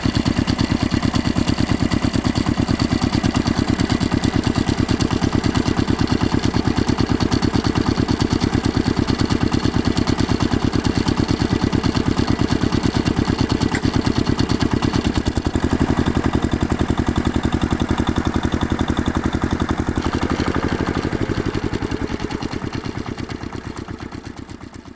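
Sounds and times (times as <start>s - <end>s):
diesel engine pulsing: 6.8s - 24.9s.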